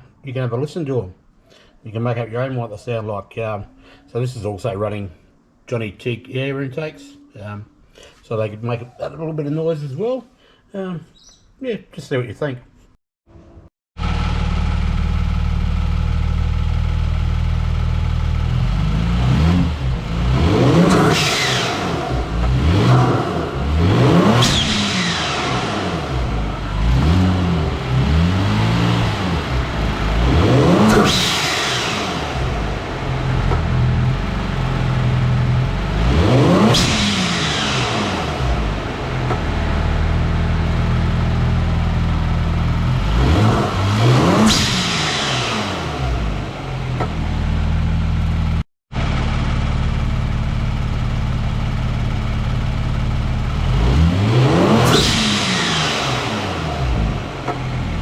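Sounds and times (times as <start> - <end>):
car engine revving: 14.0 - 58.0.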